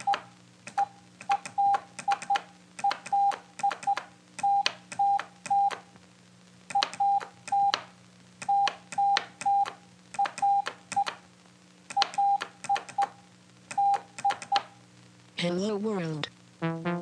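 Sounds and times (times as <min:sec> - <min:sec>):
morse code beeps: 0:00.8 - 0:05.8, 0:08.5 - 0:11.1, 0:13.8 - 0:14.6.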